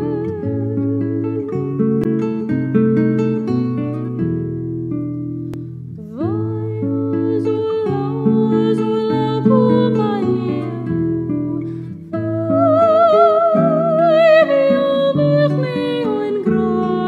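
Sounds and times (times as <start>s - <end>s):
person singing with vibrato: 0.0s - 1.6s, 6.1s - 17.0s.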